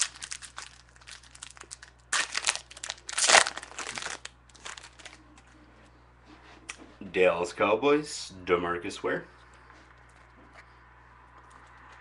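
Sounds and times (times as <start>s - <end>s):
plastic wrapper crinkling and tearing: 0.0s - 5.2s.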